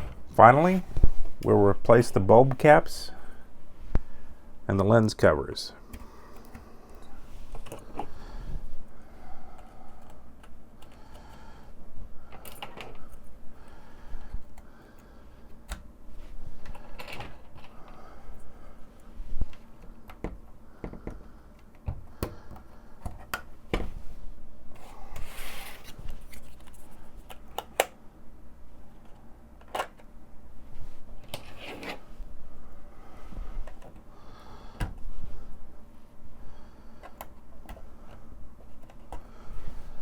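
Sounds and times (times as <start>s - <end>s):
plastic parts clicking and rustling: 12.3s - 13.3s, 16.6s - 17.8s.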